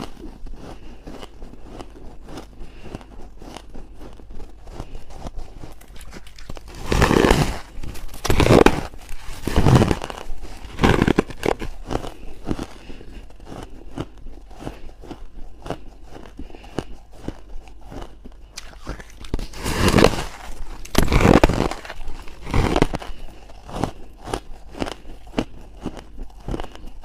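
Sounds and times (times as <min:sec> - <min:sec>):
ice being crunched: 0:05.4 - 0:12.7, 0:17.9 - 0:27.0.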